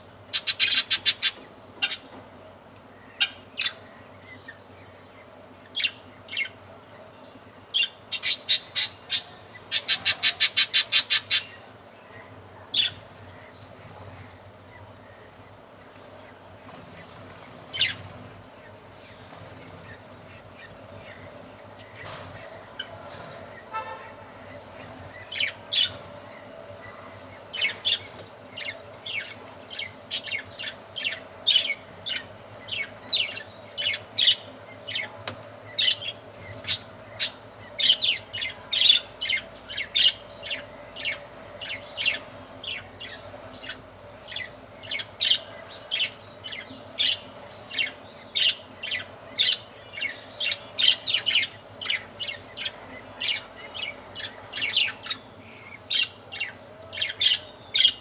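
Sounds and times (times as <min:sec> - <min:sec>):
budgerigars chirping: 0:00.3 - 0:02.1, 0:07.8 - 0:11.7, 0:12.7 - 0:14.3, 0:27.5 - 0:35.1, 0:35.7 - 0:58.0.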